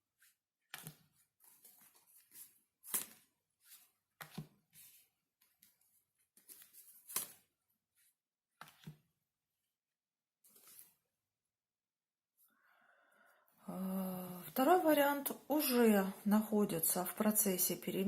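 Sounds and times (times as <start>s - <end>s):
cards rustling and sliding: 0.1s - 9.0s, 10.5s - 11.0s
cards slapping on table: 0.7s - 1.0s, 2.8s - 4.5s, 6.4s - 7.4s, 8.6s - 9.0s.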